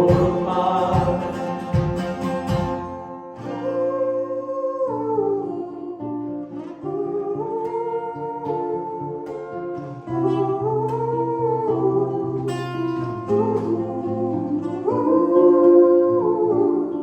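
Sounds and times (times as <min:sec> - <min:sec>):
sliding lead melody: 0:00.0 - 0:04.2
acoustic guitar: 0:00.0 - 0:17.0.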